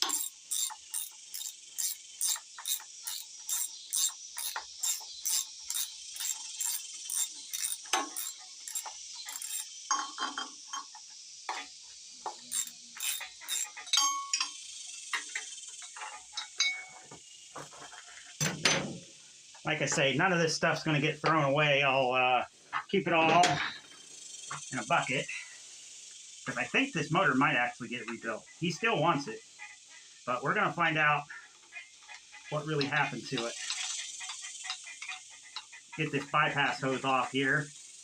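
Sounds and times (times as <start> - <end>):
hand ratchet clicking: 0.0 - 9.7, 12.5 - 13.9
tools clinking on metal: 0.0 - 11.7, 12.5 - 14.6, 15.2 - 17.1.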